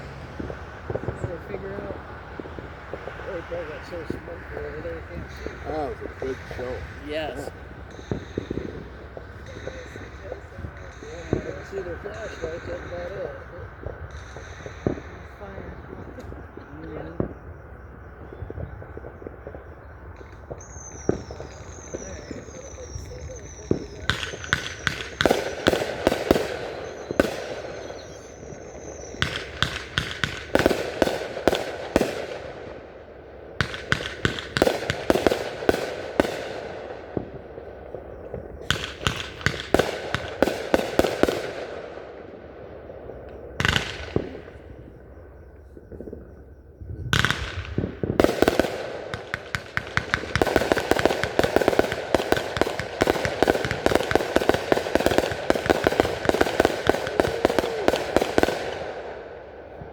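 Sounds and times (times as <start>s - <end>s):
fireworks crackling: 0.0s - 59.9s
sharp firework bangs: 0.0s - 59.9s.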